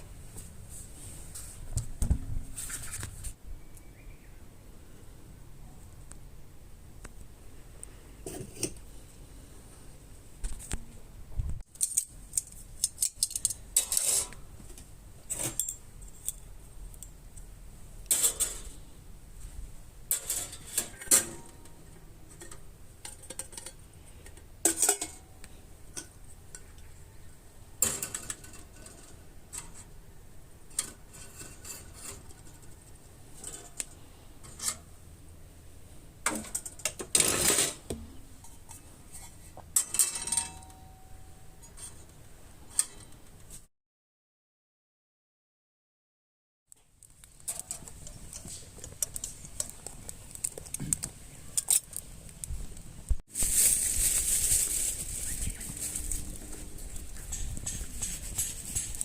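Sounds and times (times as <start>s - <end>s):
sheet metal parts clinking: 18.1s - 18.8s, 20.1s - 21.8s, 39.7s - 41.0s.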